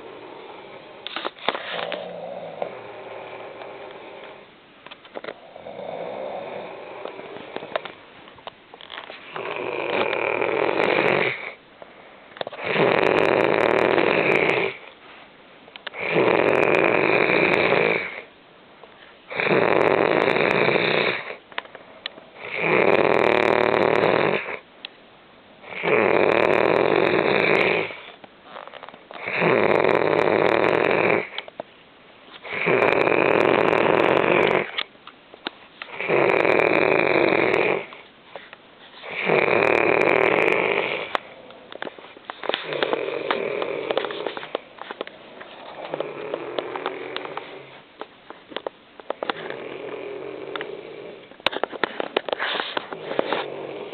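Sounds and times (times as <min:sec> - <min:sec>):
loud rasping snoring: 0:00.0 - 0:04.5, 0:05.2 - 0:07.9, 0:09.3 - 0:11.6, 0:12.6 - 0:14.8, 0:15.9 - 0:18.3, 0:19.3 - 0:21.4, 0:22.4 - 0:24.6, 0:25.6 - 0:28.1, 0:29.2 - 0:31.5, 0:32.4 - 0:34.9, 0:35.9 - 0:38.0, 0:39.0 - 0:41.8, 0:42.4 - 0:44.6, 0:45.2 - 0:47.8, 0:49.2 - 0:51.3, 0:52.8 - 0:53.9
quiet breaths: 0:00.0 - 0:25.0, 0:25.6 - 0:53.9.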